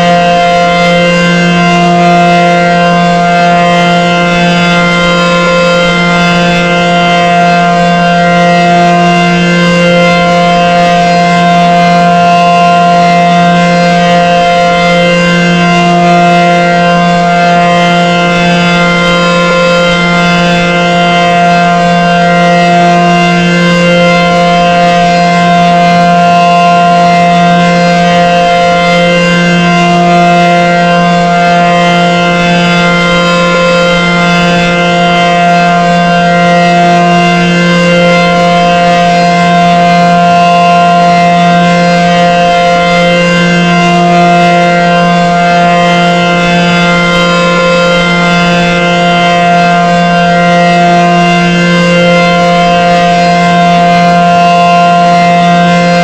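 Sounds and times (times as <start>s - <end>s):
warning siren steady tone: 0.0s - 56.0s.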